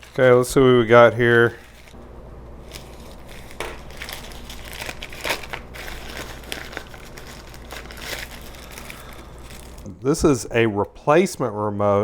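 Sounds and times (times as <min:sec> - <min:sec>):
packaging crinkling and rustling: 0:00.0 - 0:02.0, 0:02.6 - 0:09.9.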